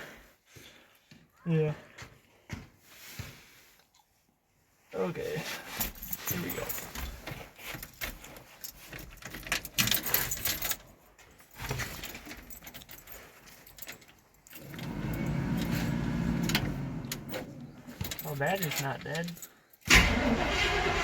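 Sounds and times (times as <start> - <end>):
keys jangling: 5.7 - 19.9
engine starter cranking: 14.6 - 17.6, 19.9 - 21.0.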